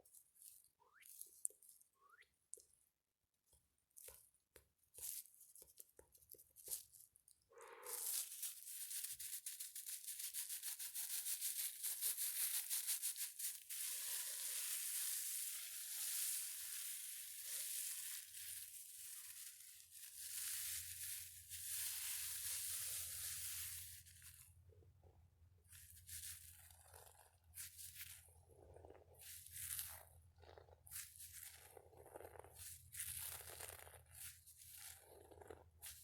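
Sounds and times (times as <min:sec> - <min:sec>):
rubbing hiss: 0:20.3 - 0:24.1
fast scratching on textured object: 0:25.7 - 0:36.0.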